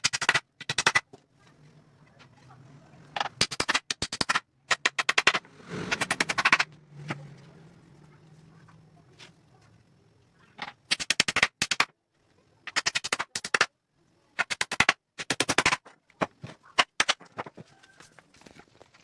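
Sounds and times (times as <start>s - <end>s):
rapid sharp knocks: 3.2s - 7.2s.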